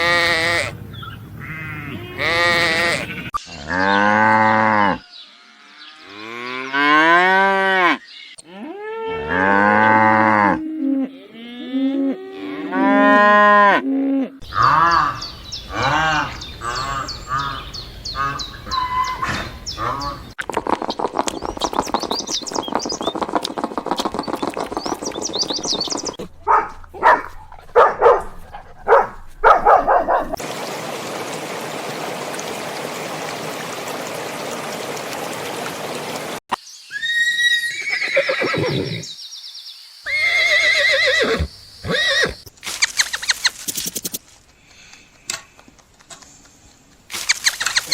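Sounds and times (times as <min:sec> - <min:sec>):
horses neighing: 0:01.4 - 0:03.4, 0:37.0 - 0:39.1, 0:40.1 - 0:42.4.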